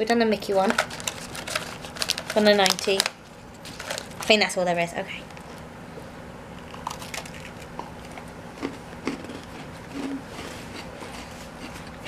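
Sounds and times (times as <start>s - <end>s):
low room hum: 0.0s - 12.0s
person chewing a cookie: 6.6s - 12.0s.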